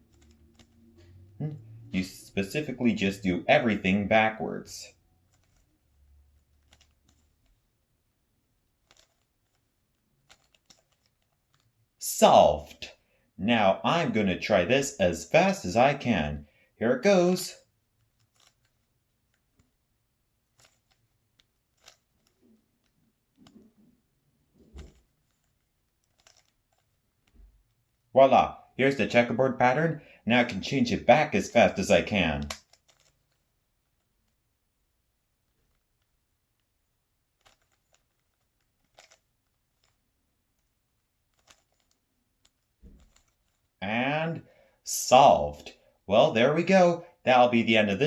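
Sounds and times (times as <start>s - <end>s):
puzzle cube twisting clicks: 0.0s - 1.8s, 5.0s - 12.0s, 17.6s - 28.1s, 31.4s - 43.8s.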